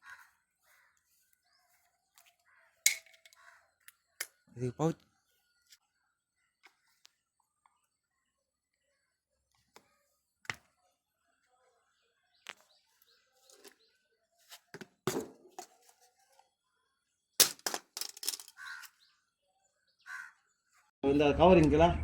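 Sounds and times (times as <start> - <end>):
clicks and knocks of objects handled: 2.1 - 4.4, 13.4 - 13.8, 17.4 - 19.0.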